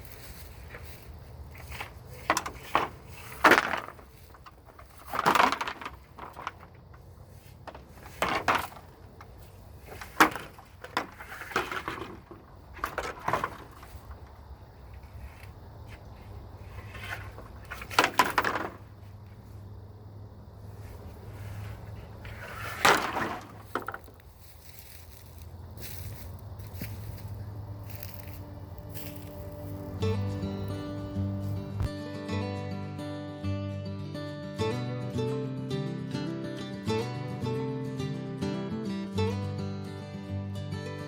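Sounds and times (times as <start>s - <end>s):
wooden sticks knocking and clattering: 1.6s - 14.3s, 16.8s - 19.0s, 22.3s - 27.3s.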